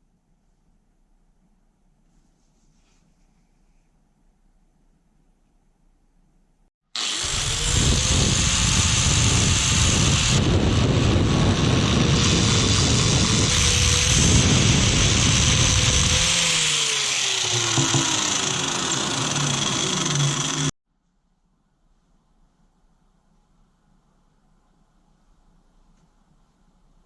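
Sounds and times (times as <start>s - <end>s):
harsh grinding noise: 7.0s - 20.7s
power tool motor running: 7.0s - 20.7s.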